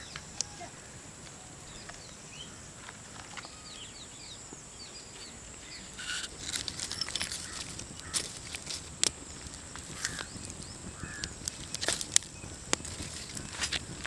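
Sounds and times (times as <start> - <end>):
high-pitched insect buzz: 0.0 - 14.0
small birds chirping: 0.0 - 14.0
rustling and handling noise: 5.9 - 14.0.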